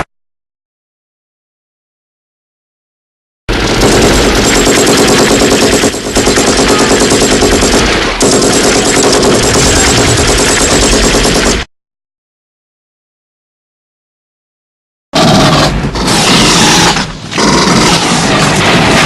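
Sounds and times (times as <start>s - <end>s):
machine gun automatic fire: 3.5s - 11.7s, 15.2s - 19.0s.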